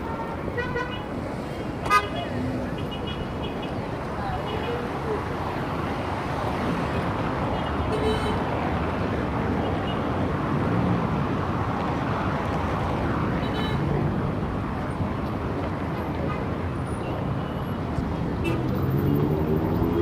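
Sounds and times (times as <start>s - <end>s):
heavy traffic rumble: 0.0s - 20.0s.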